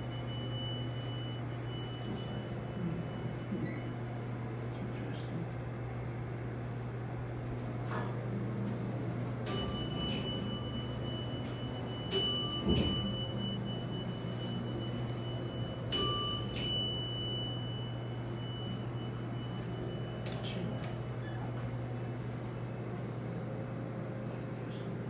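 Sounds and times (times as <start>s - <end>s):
elevator chime dinging: 0.0s - 4.3s, 9.4s - 22.7s
steady low hum: 0.0s - 25.0s.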